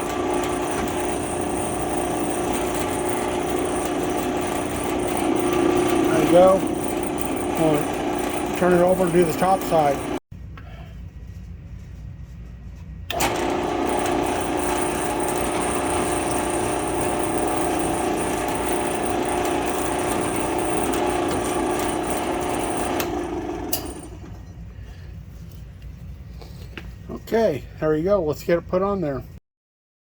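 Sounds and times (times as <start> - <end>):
drill press running: 0.0 - 10.2, 13.1 - 24.8.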